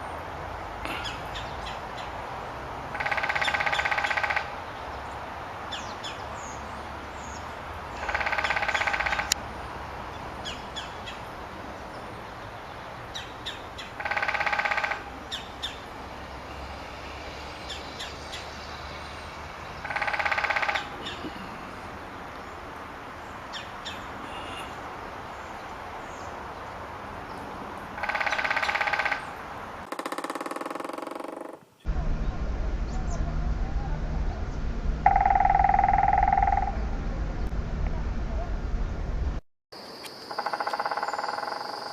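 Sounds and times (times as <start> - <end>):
woodpecker drumming on wood: 2.9 - 4.5, 8.0 - 9.4, 14.0 - 15.1, 19.8 - 21.1, 28.0 - 31.8, 35.0 - 36.9, 40.3 - 41.9
faint bird chirps: 23.6 - 24.8.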